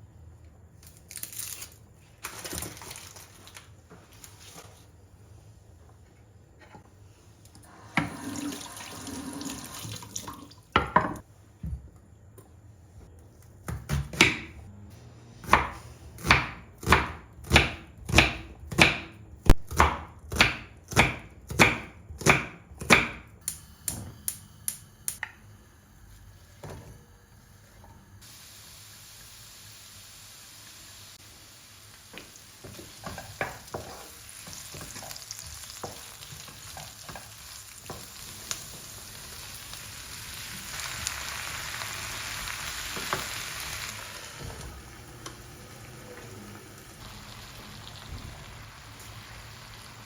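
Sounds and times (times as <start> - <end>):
water running in sink: 7.7 - 11.0, 34.4 - 50.0.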